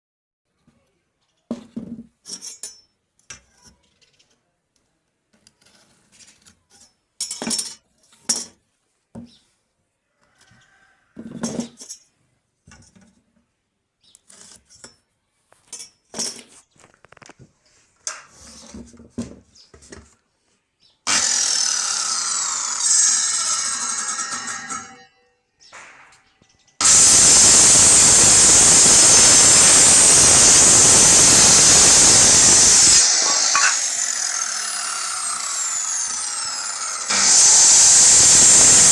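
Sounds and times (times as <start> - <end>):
loud continuous sound: 26.8 - 38.9.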